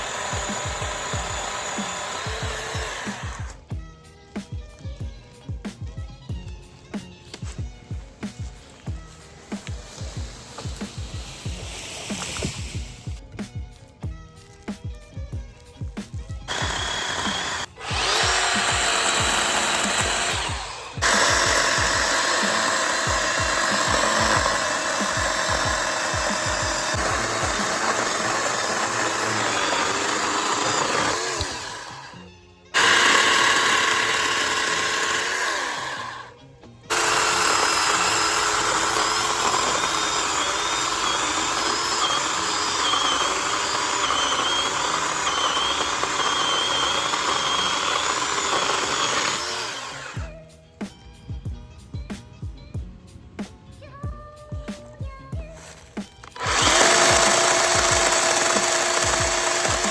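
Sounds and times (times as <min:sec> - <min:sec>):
chainsaw motor whine: 0:00.0 - 0:03.6, 0:16.2 - 0:50.3, 0:55.6 - 0:59.9.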